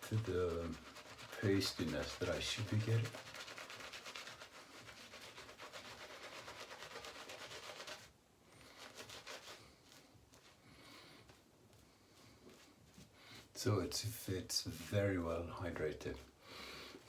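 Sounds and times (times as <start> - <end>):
shaving brush swishing in lather: 0.0 - 10.6.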